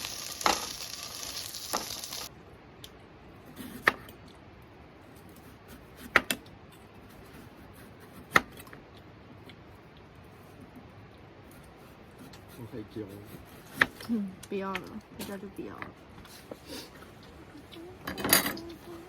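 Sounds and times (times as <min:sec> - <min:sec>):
fire crackling and hissing: 0:00.0 - 0:02.3.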